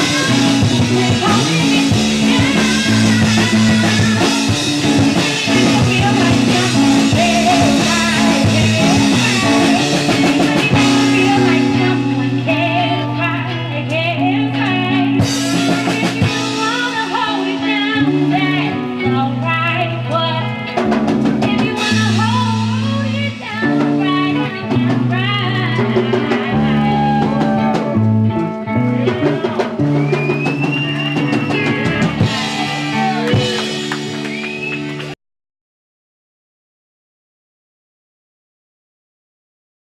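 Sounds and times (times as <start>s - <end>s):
bass line: 0.0s - 35.2s
drum kit: 0.0s - 35.2s
guitar: 0.0s - 35.2s.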